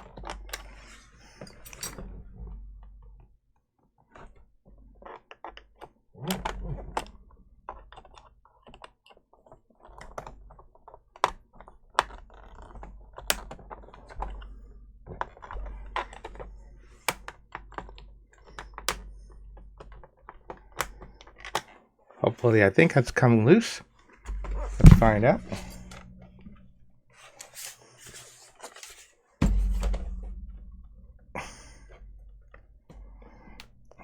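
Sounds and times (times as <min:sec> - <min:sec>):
dull bumps: 0:24.3 - 0:26.8.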